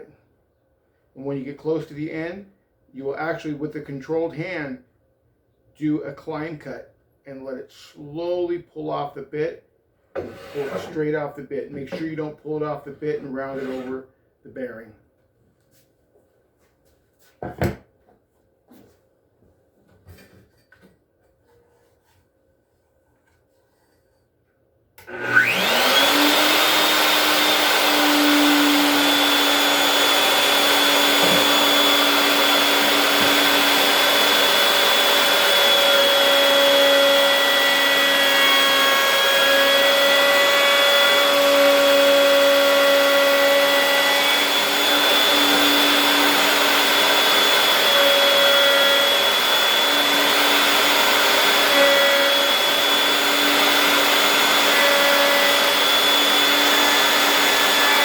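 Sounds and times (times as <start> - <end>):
wood router high-pitched whine: 25.0 - 58.0.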